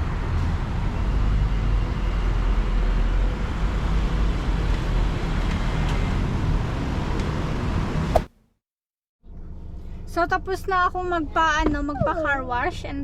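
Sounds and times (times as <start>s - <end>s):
road traffic rumble: 0.0s - 8.4s.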